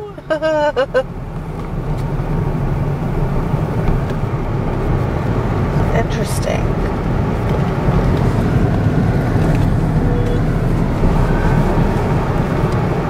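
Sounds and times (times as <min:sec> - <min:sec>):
car cabin road rumble: 0:00.0 - 0:13.0.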